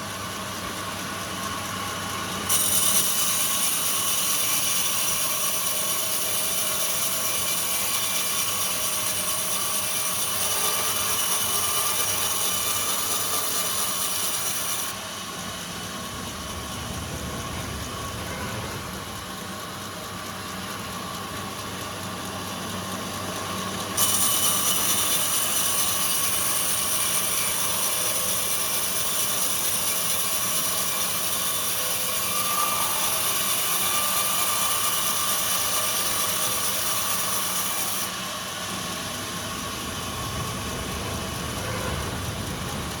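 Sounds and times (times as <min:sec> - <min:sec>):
sawmill machinery high whine: 0:00.0 - 0:43.0
low machinery rumble: 0:14.9 - 0:23.7, 0:38.1 - 0:43.0.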